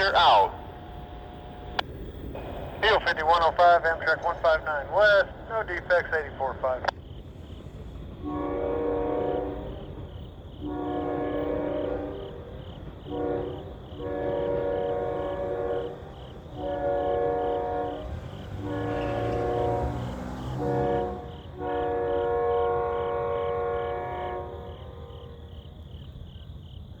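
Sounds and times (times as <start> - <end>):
train rumbling past: 0.0 - 27.0
locomotive air horn blasts: 8.2 - 9.7, 10.6 - 12.5, 13.1 - 25.1.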